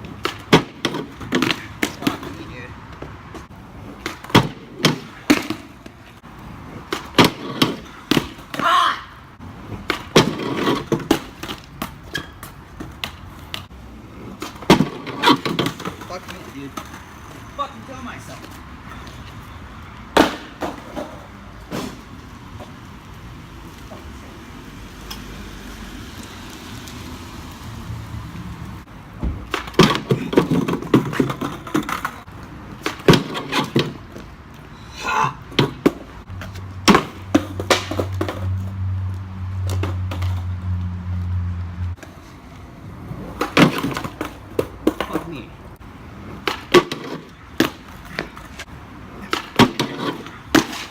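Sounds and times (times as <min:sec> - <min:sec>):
skateboard rolling: 0:00.0 - 0:08.7, 0:09.4 - 0:17.8, 0:18.4 - 0:34.8, 0:35.4 - 0:50.9
skateboard knock: 0:09.8 - 0:13.6, 0:20.2 - 0:22.0, 0:29.2 - 0:32.2, 0:35.5 - 0:38.5, 0:43.2 - 0:45.4, 0:46.4 - 0:48.6
skateboard wheels clicking: 0:29.4 - 0:34.7.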